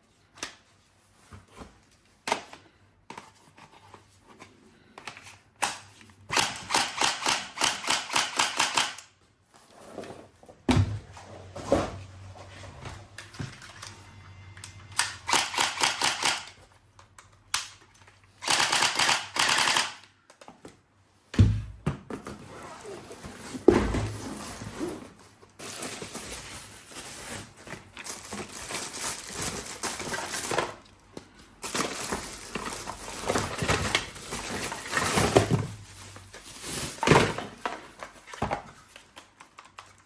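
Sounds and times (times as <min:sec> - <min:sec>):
toy gun mechanism clicking: 0:05.6 - 0:09.1, 0:14.9 - 0:16.6, 0:18.4 - 0:20.2.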